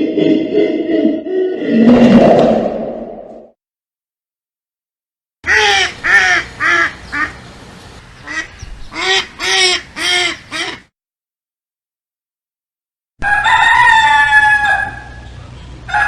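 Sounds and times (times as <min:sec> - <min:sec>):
waterfowl nasal calls: 0:05.5 - 0:07.4, 0:08.2 - 0:10.9.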